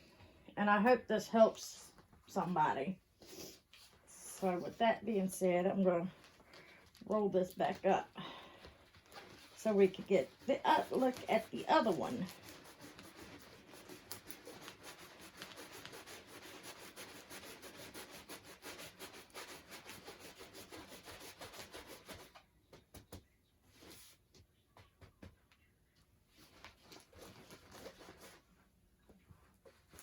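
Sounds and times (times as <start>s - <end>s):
canvas rubbing and rustling: 9.0s - 22.0s.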